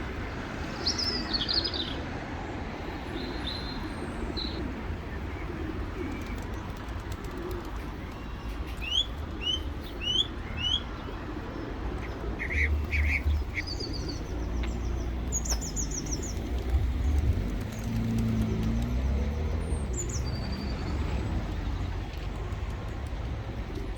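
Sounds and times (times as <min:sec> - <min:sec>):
pigeons cooing: 0:02.8 - 0:20.3.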